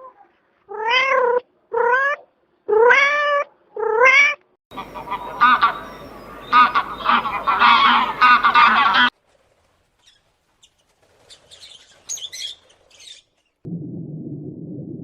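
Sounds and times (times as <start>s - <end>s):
geese honking: 4.7s - 9.1s.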